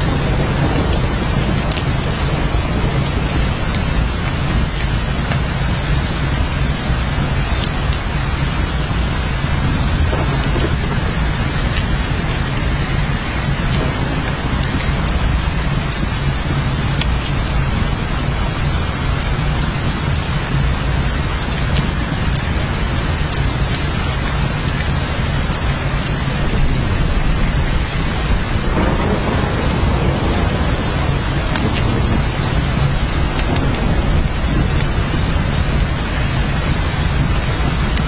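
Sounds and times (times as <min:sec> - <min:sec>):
continuous low rumble: 0:00.0 - 0:38.0
heavy rain hiss: 0:00.0 - 0:38.0
raindrop ticks: 0:00.0 - 0:38.0.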